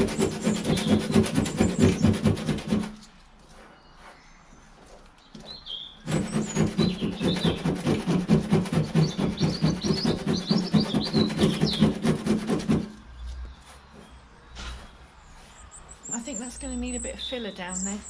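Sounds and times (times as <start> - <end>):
sandpaper scraping metal: 0.0 - 4.2, 6.0 - 14.1
birds chirping faintly: 0.0 - 18.0.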